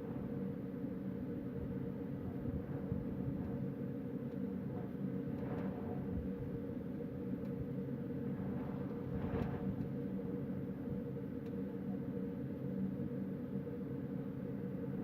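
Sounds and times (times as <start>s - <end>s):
low wind rumble: 0.0s - 11.4s
low hum: 0.0s - 12.3s.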